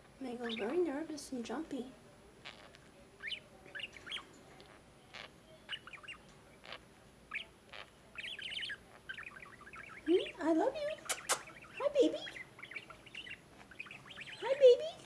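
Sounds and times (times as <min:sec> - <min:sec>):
budgerigars chattering: 0:00.3 - 0:01.6, 0:02.4 - 0:15.0
sharp clicks: 0:11.0 - 0:11.5.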